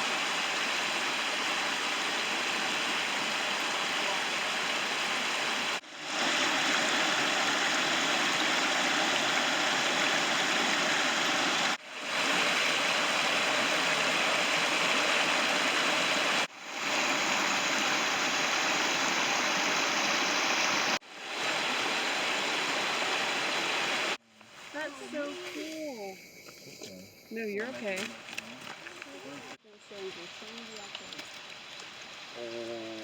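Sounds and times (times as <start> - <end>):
running water rushing: 0.0 - 25.5.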